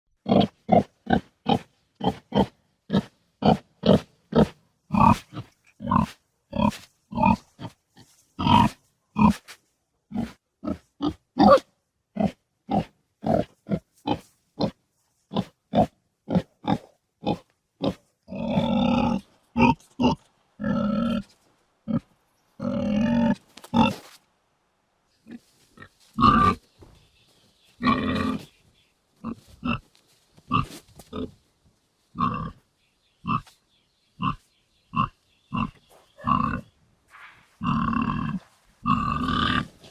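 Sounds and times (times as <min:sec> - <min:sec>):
pig grunting: 0:00.2 - 0:09.4, 0:10.1 - 0:24.1, 0:25.2 - 0:26.6, 0:27.8 - 0:28.6, 0:30.5 - 0:31.4, 0:32.2 - 0:32.6, 0:34.2 - 0:36.7, 0:37.6 - 0:39.9.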